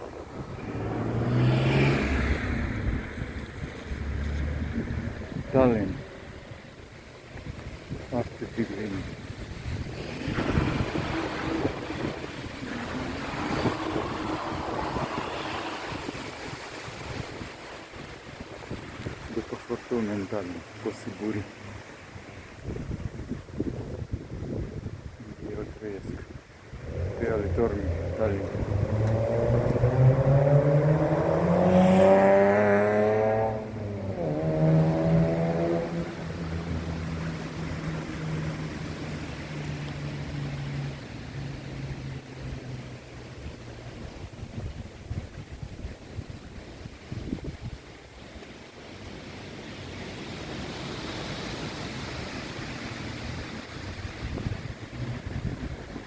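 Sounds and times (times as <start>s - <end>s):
vehicle engine accelerating: 0.0s - 6.1s, 9.7s - 16.7s, 26.6s - 42.9s
wind gusting on microphone: 0.0s - 19.8s, 21.4s - 40.8s, 43.5s - 56.0s
rushing noise: 9.0s - 17.3s, 26.6s - 33.0s.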